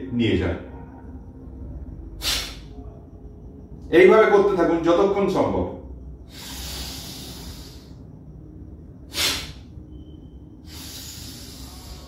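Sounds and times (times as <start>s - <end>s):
person breathing forcefully: 2.2s - 2.7s, 6.2s - 8.2s, 9.0s - 9.8s, 10.6s - 12.0s.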